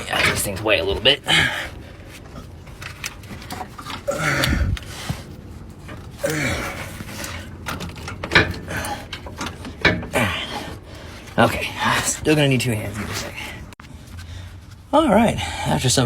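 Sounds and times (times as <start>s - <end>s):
man grunting with effort: 4.0s - 4.9s, 6.2s - 7.0s, 10.1s - 10.8s.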